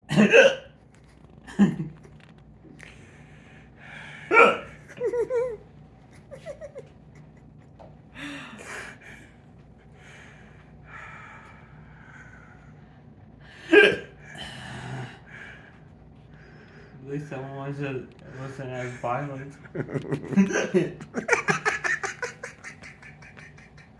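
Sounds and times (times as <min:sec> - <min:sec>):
person hiccuping: 0:00.1 - 0:00.7, 0:04.3 - 0:05.0, 0:13.7 - 0:14.2.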